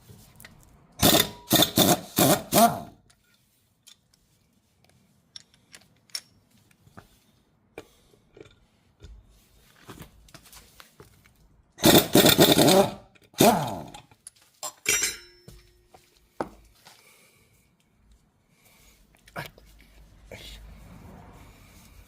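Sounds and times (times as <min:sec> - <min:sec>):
metal clinks of hand tools: 0:13.8 - 0:15.8.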